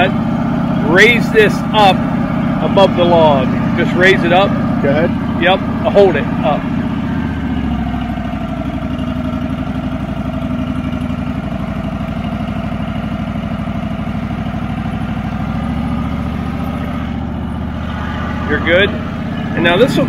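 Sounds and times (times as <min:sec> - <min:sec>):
sawmill engine running: 0:00.0 - 0:20.0.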